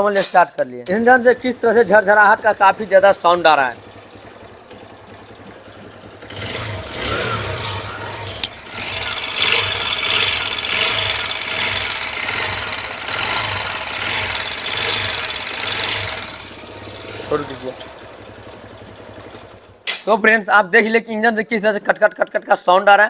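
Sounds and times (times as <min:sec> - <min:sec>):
motorcycle engine with harsh rattle: 0:00.0 - 0:20.3
sharp click: 0:19.3 - 0:20.1.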